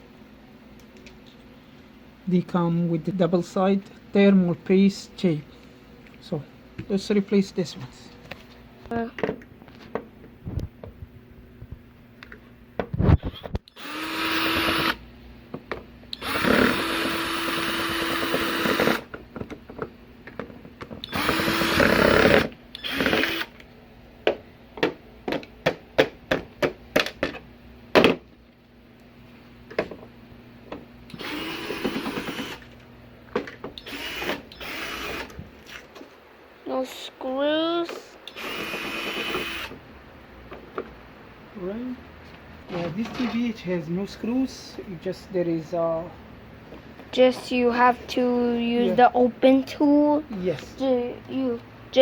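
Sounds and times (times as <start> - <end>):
power screwdriver whirring: 13.2 - 15.0, 16.1 - 19.1, 21.0 - 23.6, 31.1 - 32.7, 33.8 - 35.4, 38.2 - 39.8.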